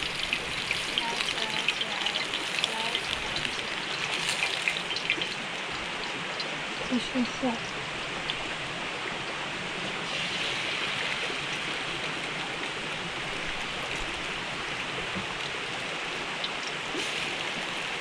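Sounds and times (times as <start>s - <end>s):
oil popping: 0.0s - 6.6s
meat sizzling in hot oil: 0.0s - 9.1s, 9.7s - 14.6s, 15.4s - 18.0s.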